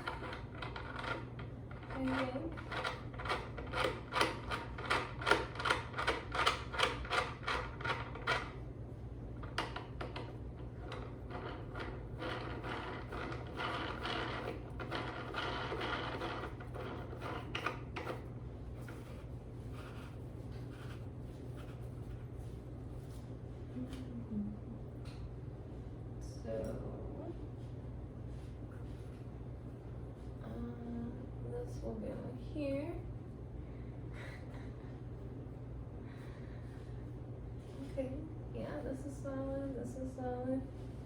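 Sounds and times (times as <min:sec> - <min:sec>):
rubbing and grinding: 0:10.8 - 0:21.0.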